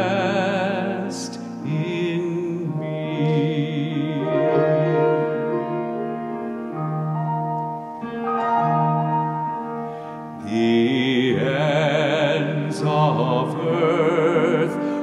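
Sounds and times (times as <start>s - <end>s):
keyboard playing slow chords: 0.0s - 15.0s.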